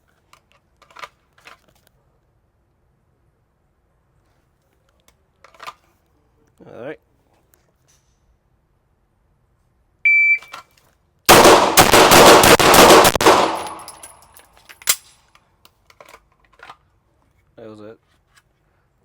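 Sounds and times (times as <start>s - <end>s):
shot timer beep: 10.1s - 10.5s
pistol shots echoing: 11.3s - 14.1s.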